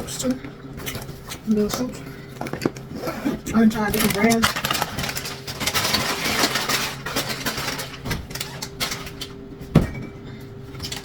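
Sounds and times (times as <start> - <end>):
food packaging rustling: 3.7 - 9.4.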